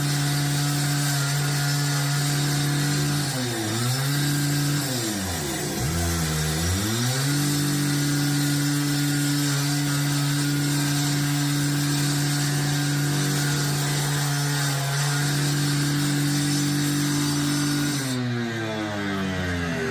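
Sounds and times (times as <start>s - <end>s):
concrete cut-off saw engine: 0.0s - 19.9s.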